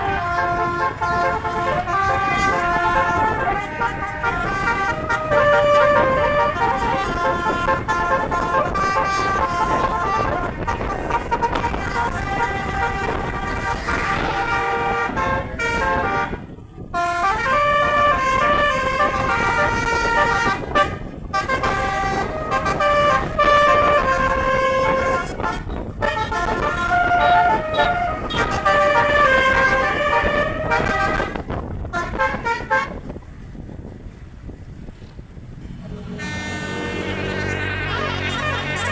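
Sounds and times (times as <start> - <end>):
bus horn playing a tune: 0.0 - 33.2, 35.8 - 38.9
low rumble: 31.4 - 38.9.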